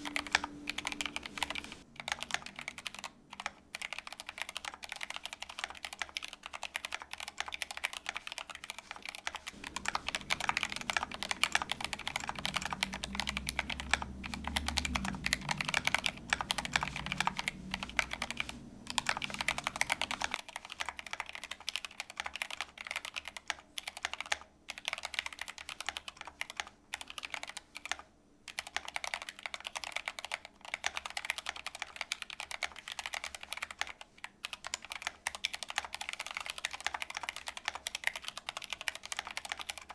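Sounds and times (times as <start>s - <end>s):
mechanical keyboard typing: 0.0s - 39.9s
low rumble: 9.6s - 20.4s.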